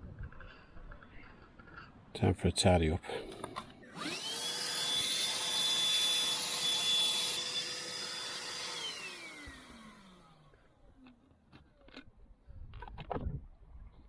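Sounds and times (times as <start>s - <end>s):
vacuum cleaner running: 3.8s - 10.6s
motor winding down whine: 3.8s - 10.7s.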